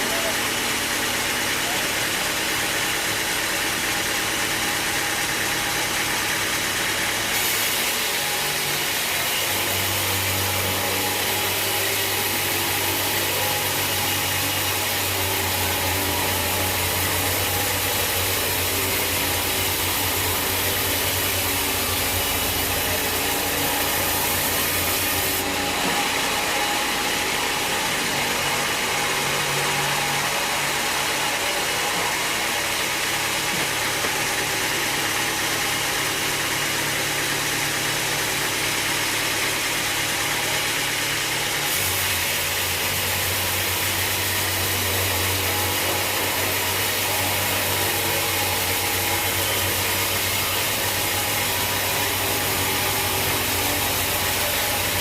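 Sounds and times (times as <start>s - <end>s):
sawmill machinery running: 0.0s - 55.0s
deep hum: 9.8s - 34.9s.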